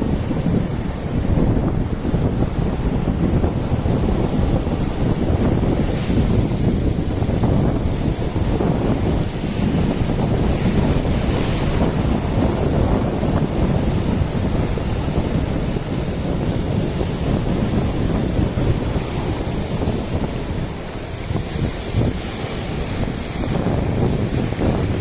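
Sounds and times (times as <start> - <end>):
sea surf washing: 0.0 - 25.0
wind buffeting microphone: 0.0 - 25.0.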